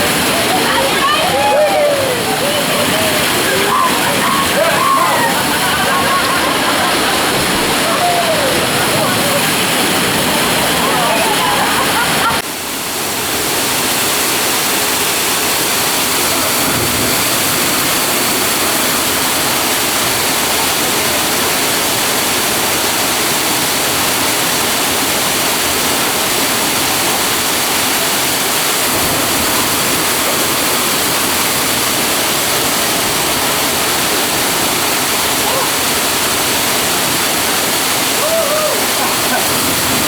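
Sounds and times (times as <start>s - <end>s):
waterfall pouring: 0.0s - 40.0s.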